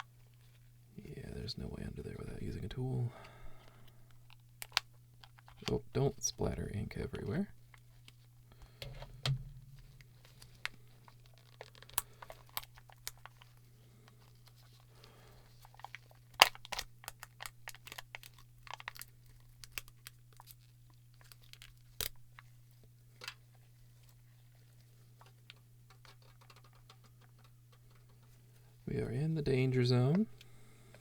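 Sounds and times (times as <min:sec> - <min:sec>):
faint low hum: 0:00.0 - 0:31.0
plastic cracking and crunching: 0:03.7 - 0:06.0, 0:09.2 - 0:24.2, 0:25.1 - 0:28.4.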